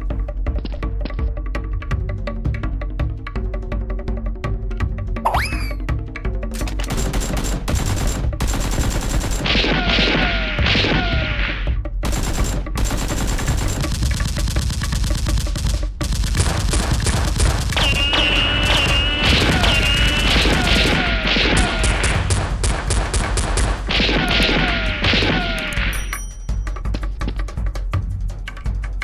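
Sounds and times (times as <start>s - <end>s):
rapid gunfire: 6.6s - 11.1s, 12.0s - 26.0s.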